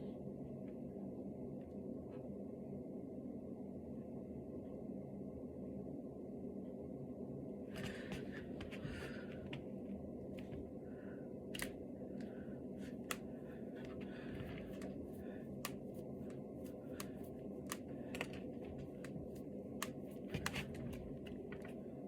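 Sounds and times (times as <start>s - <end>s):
background hum and hiss: 0.0s - 22.0s
knuckles cracking: 15.6s - 20.8s.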